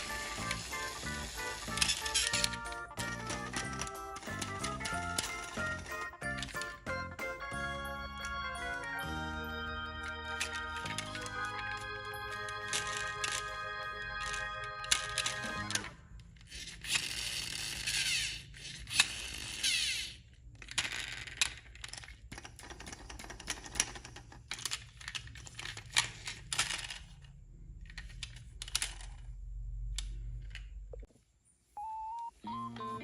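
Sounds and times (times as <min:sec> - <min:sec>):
small electric motor whirring: 0:00.0 - 0:02.7, 0:16.5 - 0:20.2.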